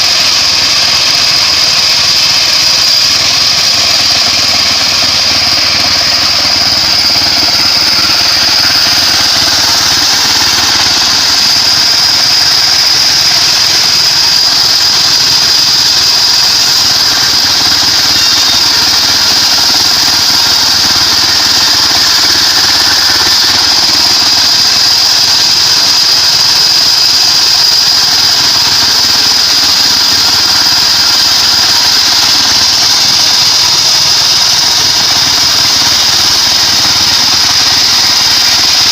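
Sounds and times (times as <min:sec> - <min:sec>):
bandsaw sawmill running: 0:00.0 - 0:38.9.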